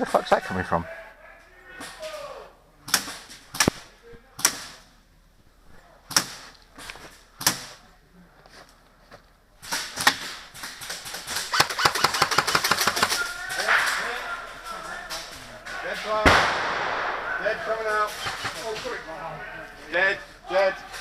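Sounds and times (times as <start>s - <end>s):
airsoft gun full-auto burst: 11.1s - 13.2s.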